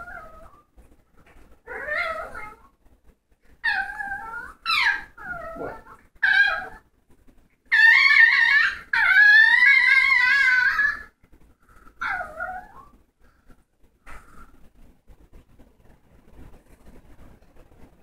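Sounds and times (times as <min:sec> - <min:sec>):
dog whining: 0:00.0 - 0:00.7, 0:01.6 - 0:02.8, 0:03.6 - 0:06.8, 0:07.7 - 0:11.2, 0:12.0 - 0:13.0
dog yipping: 0:03.6 - 0:06.8, 0:07.7 - 0:11.1, 0:12.0 - 0:12.9.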